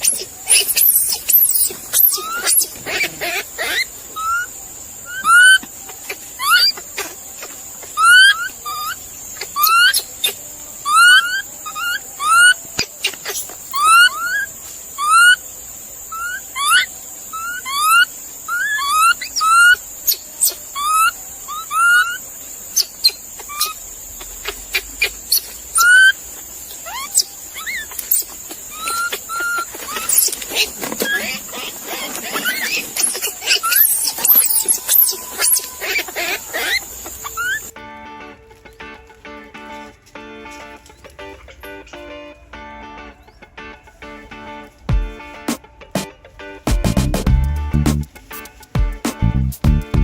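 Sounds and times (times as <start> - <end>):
animal whistle-like calls: 0.0 - 7.2, 7.9 - 15.4, 16.1 - 22.2, 24.4 - 26.2, 26.8 - 37.8
steady high hiss: 0.0 - 50.0.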